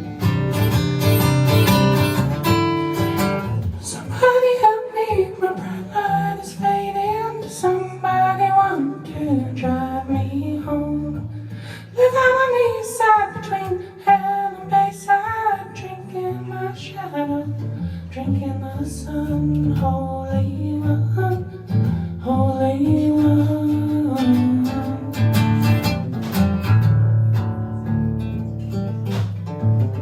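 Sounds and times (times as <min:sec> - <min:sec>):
guitar strumming: 0:00.0 - 0:16.7, 0:22.7 - 0:30.0.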